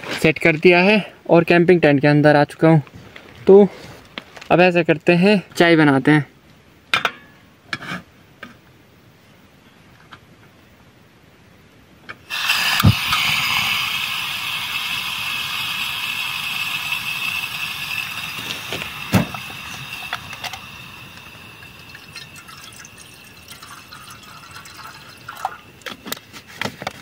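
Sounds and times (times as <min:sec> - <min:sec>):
water pouring into a pot: 0:12.3 - 0:25.9.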